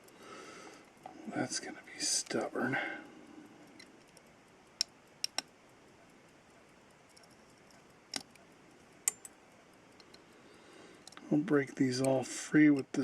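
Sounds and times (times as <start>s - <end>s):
small metallic tool clicks: 3.7s - 5.6s, 9.0s - 9.4s.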